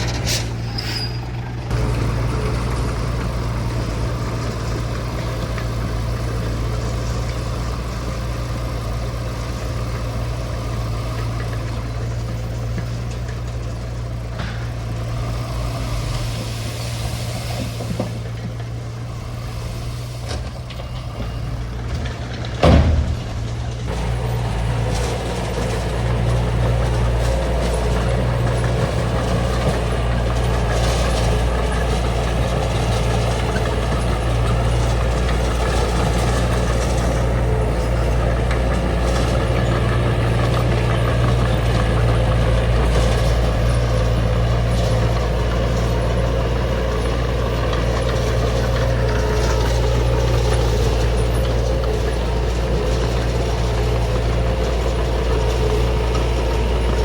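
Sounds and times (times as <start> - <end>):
bulldozer diesel engine: 0.0 - 57.0.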